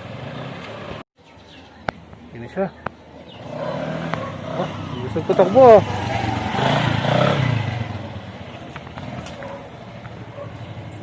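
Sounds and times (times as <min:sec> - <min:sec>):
motor scooter passing by: 0:00.0 - 0:01.0, 0:03.3 - 0:11.0.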